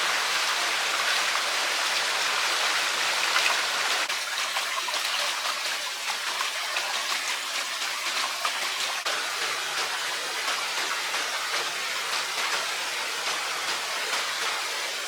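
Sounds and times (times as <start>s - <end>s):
running water rushing: 0.0s - 15.0s.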